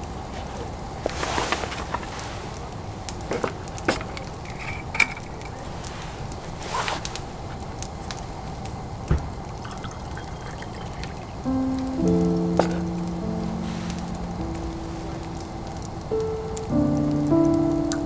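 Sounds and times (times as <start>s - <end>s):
steady low hiss: 0.0s - 18.0s
liquid pouring and dripping: 3.0s - 16.4s.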